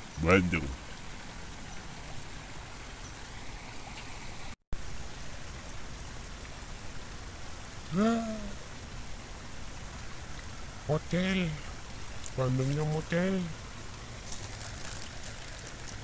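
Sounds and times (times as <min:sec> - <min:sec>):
flowing river water: 0:00.0 - 0:16.0
man's vocal exclamation: 0:07.9 - 0:08.6.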